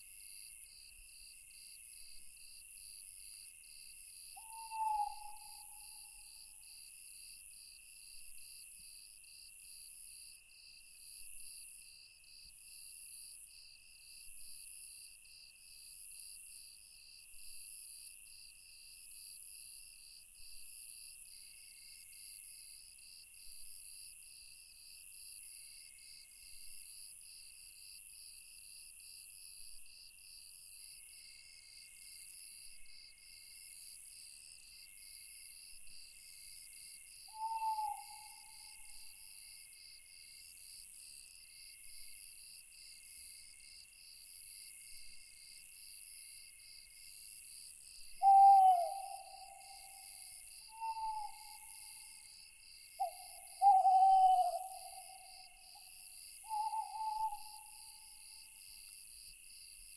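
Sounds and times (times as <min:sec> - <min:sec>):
crickets and night insects trilling: 0:00.2 - 0:08.6, 0:09.3 - 0:59.9
owl hooting: 0:04.4 - 0:05.9, 0:37.3 - 0:38.8, 0:48.2 - 0:52.0, 0:53.0 - 0:57.9.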